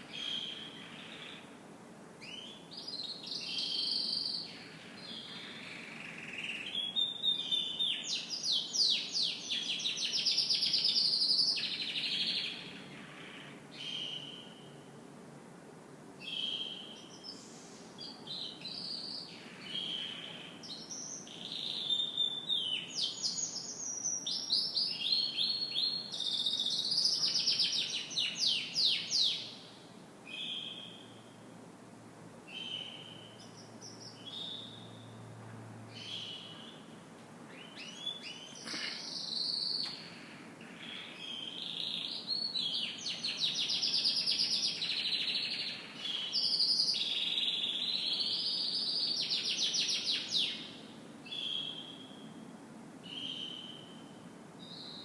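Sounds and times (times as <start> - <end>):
canary singing: 2.2 - 14.8, 18.0 - 31.4, 35.9 - 36.9, 37.5 - 40.0, 40.6 - 52.4.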